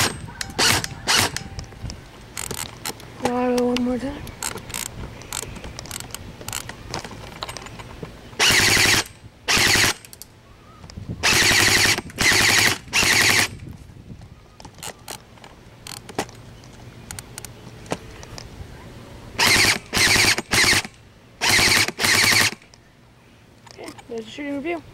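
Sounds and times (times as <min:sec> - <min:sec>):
airsoft gun full-auto bursts: 0:00.0 - 0:01.4, 0:08.4 - 0:10.0, 0:11.2 - 0:13.6, 0:19.4 - 0:22.6.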